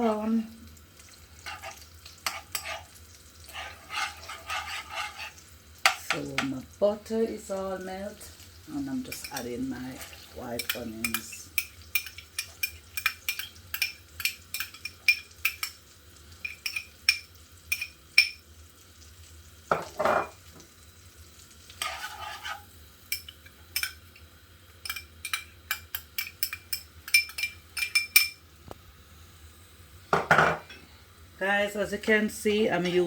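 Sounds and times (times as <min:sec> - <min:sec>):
faint sizzle: 0:00.0 - 0:33.0
spoon scraping a pot: 0:01.4 - 0:06.0, 0:09.1 - 0:15.8, 0:21.7 - 0:24.0, 0:24.8 - 0:28.4.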